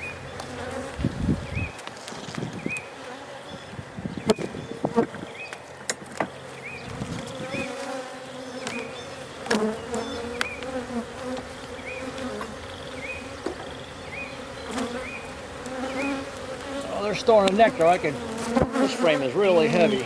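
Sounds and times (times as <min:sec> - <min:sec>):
bees buzzing: 0:00.0 - 0:20.0.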